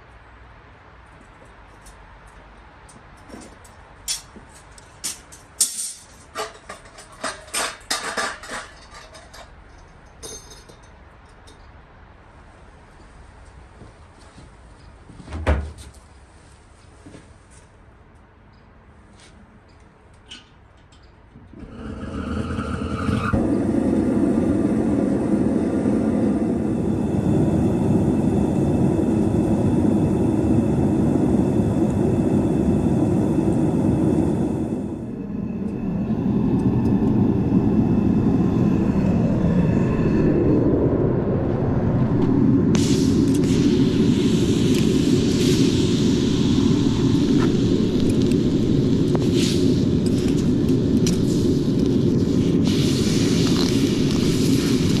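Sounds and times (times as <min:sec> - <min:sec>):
gas burner rushing: 0:21.5 - 0:55.0.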